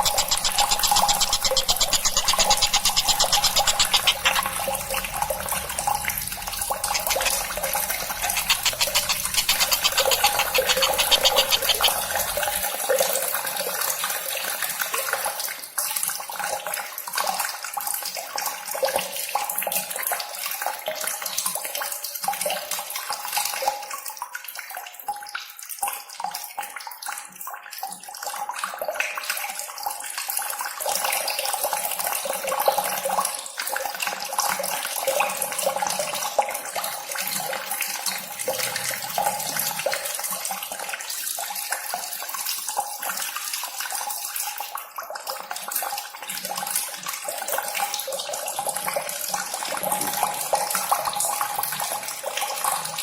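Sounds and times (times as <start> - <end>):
running water rushing: 0.0 - 12.8.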